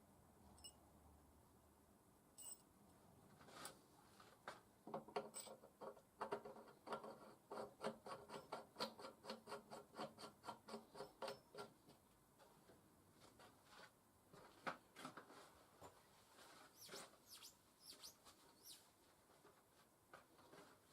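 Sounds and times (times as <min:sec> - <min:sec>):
hand tool scraping metal: 0:06.3 - 0:11.8.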